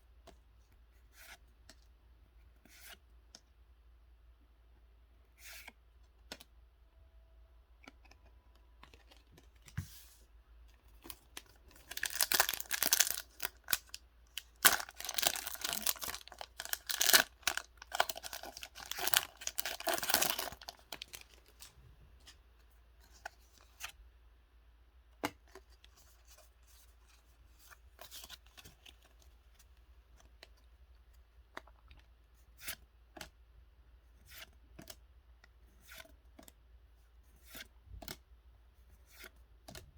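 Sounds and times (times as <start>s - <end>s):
plastic packaging ripping and crackling: 11.1s - 21.7s.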